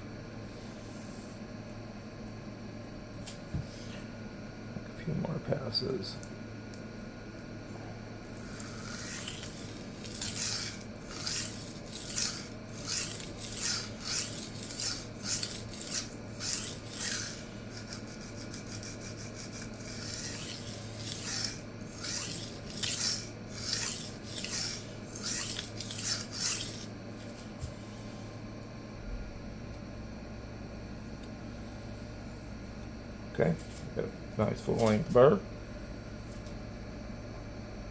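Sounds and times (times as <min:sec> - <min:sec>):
knife scraping on sharpening stone: 0:08.6 - 0:26.9.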